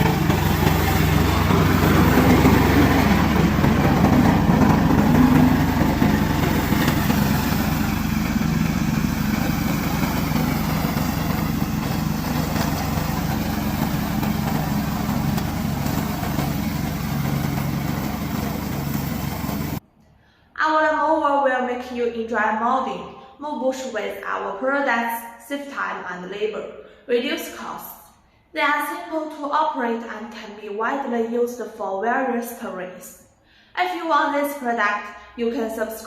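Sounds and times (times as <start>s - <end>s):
mower engine running: 0.0s - 19.8s.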